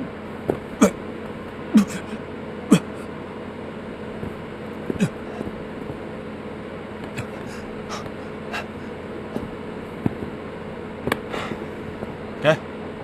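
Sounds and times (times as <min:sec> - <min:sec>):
low room hum: 0:00.0 - 0:13.0
soft footsteps: 0:00.4 - 0:02.1, 0:04.0 - 0:06.3, 0:07.0 - 0:10.4, 0:11.0 - 0:12.4.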